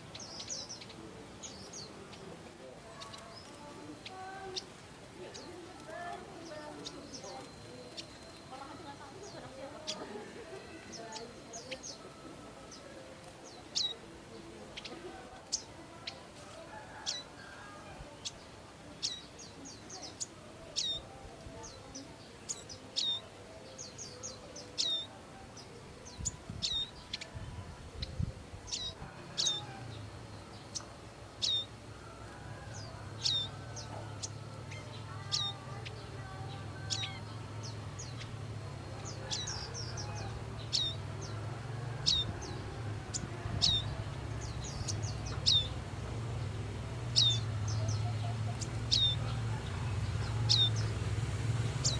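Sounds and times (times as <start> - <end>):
bird chirping: 28.0 - 41.4, 42.0 - 51.9.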